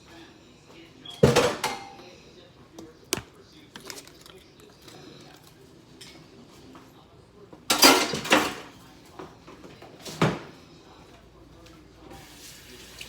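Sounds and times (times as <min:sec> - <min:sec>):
faint kitchen sounds: 0:00.0 - 0:13.0
dishes and utensils clattering: 0:01.1 - 0:02.1, 0:07.7 - 0:10.6.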